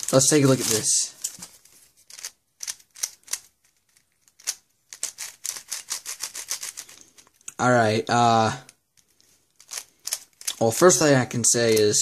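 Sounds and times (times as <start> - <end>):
plastic puzzle cube clicking: 2.0 - 7.5, 8.7 - 10.6.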